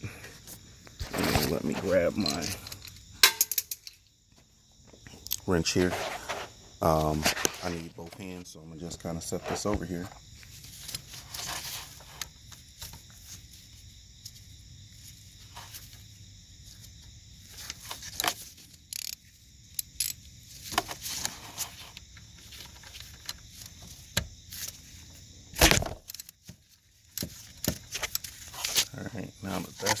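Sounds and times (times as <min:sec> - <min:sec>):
wrench clicking on metal socket: 0:18.9 - 0:19.2.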